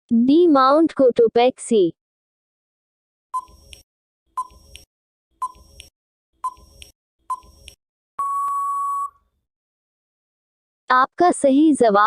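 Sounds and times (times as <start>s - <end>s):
countdown timer beeping and clicking: 3.4s - 3.8s, 4.4s - 9.1s.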